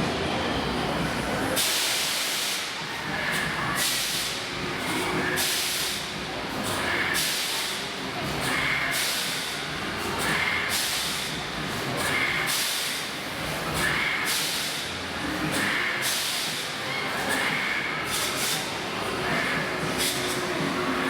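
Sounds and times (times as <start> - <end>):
ride machinery rumble: 0.0 - 21.0.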